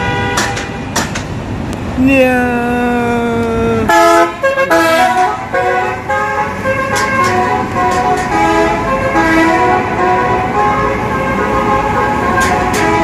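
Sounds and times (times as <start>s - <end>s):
traffic: 0.0s - 13.0s
musical air horn melody: 3.9s - 13.0s.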